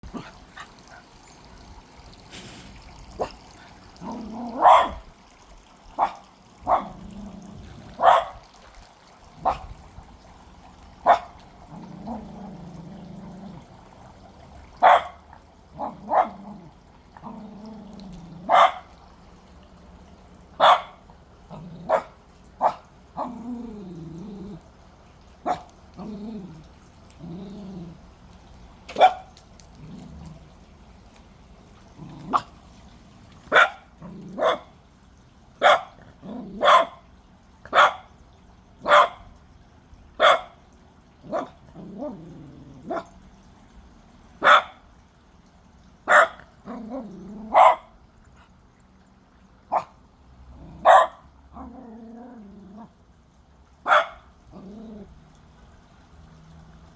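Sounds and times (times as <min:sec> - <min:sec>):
puppy barking: 0:04.5 - 0:05.1, 0:06.0 - 0:07.0, 0:08.0 - 0:08.5, 0:09.4 - 0:09.7, 0:11.0 - 0:11.4, 0:14.8 - 0:15.2, 0:15.8 - 0:16.4, 0:18.5 - 0:18.9, 0:20.6 - 0:21.0, 0:21.9 - 0:23.3, 0:25.5 - 0:25.7, 0:28.9 - 0:29.4, 0:33.5 - 0:34.7, 0:35.6 - 0:36.0, 0:36.6 - 0:37.0, 0:37.7 - 0:38.1, 0:38.8 - 0:39.3, 0:40.2 - 0:40.6, 0:41.3 - 0:41.6, 0:44.4 - 0:44.8, 0:46.1 - 0:46.5, 0:47.5 - 0:48.0, 0:49.7 - 0:50.0, 0:50.8 - 0:51.7, 0:53.8 - 0:54.3.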